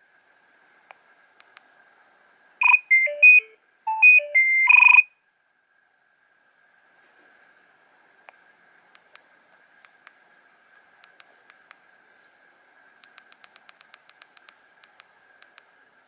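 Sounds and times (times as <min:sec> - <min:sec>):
faint clicks: 0:00.9 - 0:01.7, 0:08.2 - 0:10.2, 0:11.0 - 0:11.9, 0:13.0 - 0:15.7
electronic beep melody ringtone: 0:02.6 - 0:05.1.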